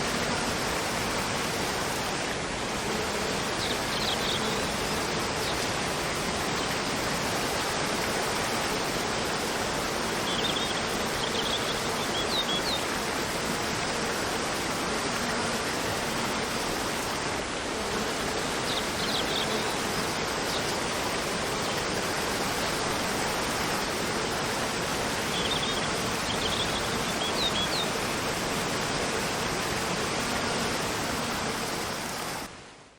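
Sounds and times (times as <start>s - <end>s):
waterfall rushing: 0.0s - 32.6s
forest birds chirping: 3.3s - 5.8s, 10.2s - 12.9s, 18.3s - 21.0s, 25.1s - 28.0s.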